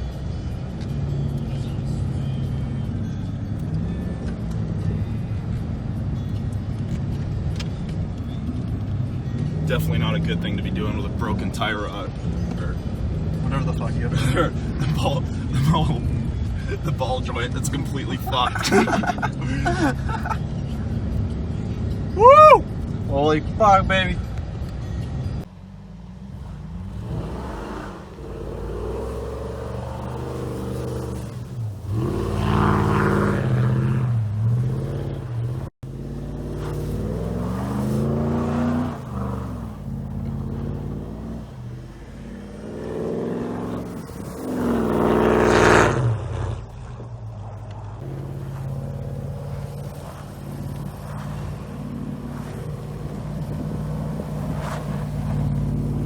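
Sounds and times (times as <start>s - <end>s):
pickup truck engine revving: 25.4s - 46.9s, 48.0s - 56.0s.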